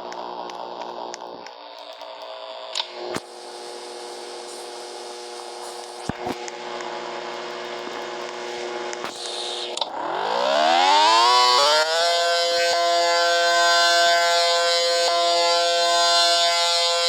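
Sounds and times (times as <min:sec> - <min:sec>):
motor-driven siren wailing: 0:10.1 - 0:17.0.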